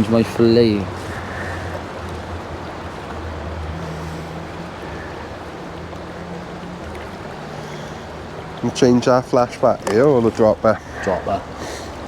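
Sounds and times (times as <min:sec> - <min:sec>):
stream rushing over stones: 0:00.0 - 0:12.0.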